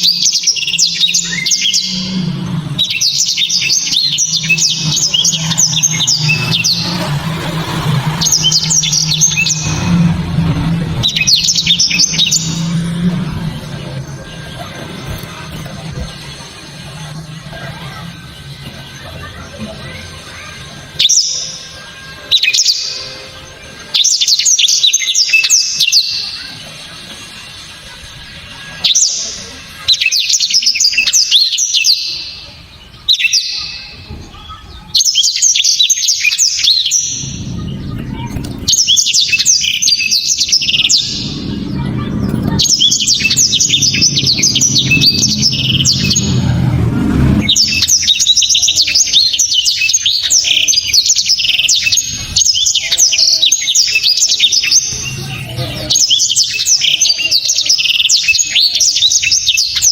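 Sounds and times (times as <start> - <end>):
bird twittering song: 0.0 - 59.9
low rumble: 0.9 - 21.0, 36.7 - 50.2.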